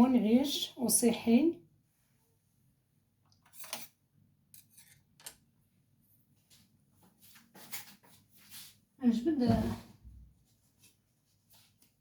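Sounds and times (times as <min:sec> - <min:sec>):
kitchen items tapping and scraping: 0:03.4 - 0:05.5.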